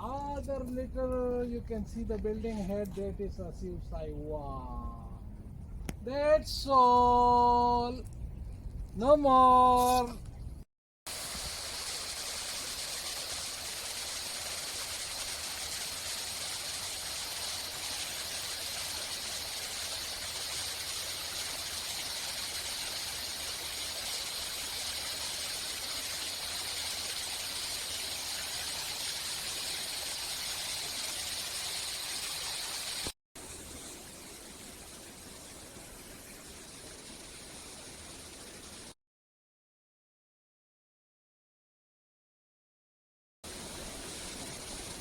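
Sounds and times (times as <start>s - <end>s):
stream water flowing: 11.1s - 38.9s, 43.5s - 45.0s.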